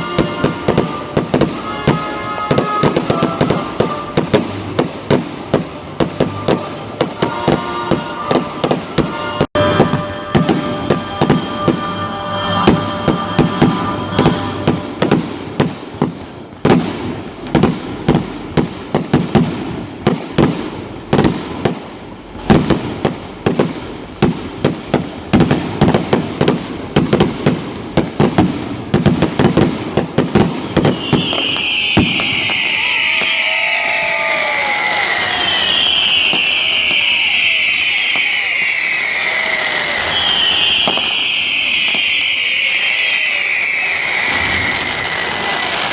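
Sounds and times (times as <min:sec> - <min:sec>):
fireworks bangs and crackles: 0:00.0 - 0:45.9
heavy firework booms: 0:00.0 - 0:45.9.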